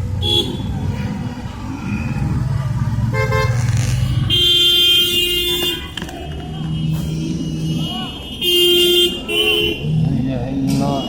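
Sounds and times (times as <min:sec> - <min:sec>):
car horns honking: 0:00.0 - 0:01.2, 0:03.1 - 0:10.0
car engines in traffic: 0:00.0 - 0:11.0.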